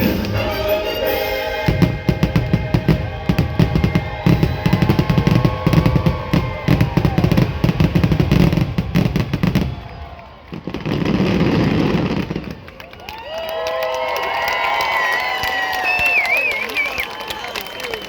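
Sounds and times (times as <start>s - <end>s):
show music: 0.0s - 5.6s
whistling firework tones: 0.0s - 12.3s, 15.4s - 18.0s
fireworks bangs: 0.0s - 12.8s.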